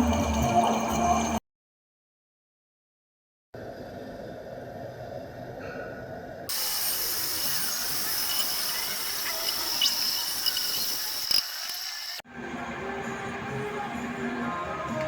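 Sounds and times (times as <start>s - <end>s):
high-pitched hiss of lathe cutting: 6.5s - 12.2s
metal lathe running: 6.5s - 12.2s
sharp ticks: 8.3s - 12.0s.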